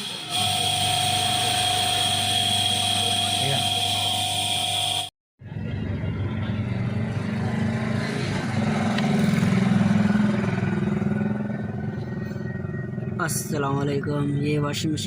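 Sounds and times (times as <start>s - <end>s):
machine humming: 0.0s - 7.5s.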